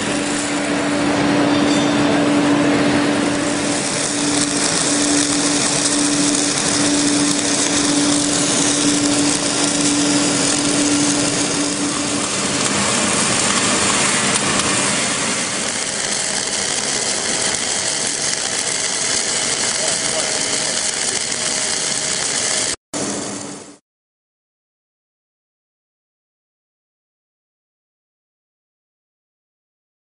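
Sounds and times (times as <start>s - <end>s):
arc welding hiss and crackle: 0.0s - 1.4s, 2.2s - 23.8s
welding machine hum: 0.0s - 23.8s.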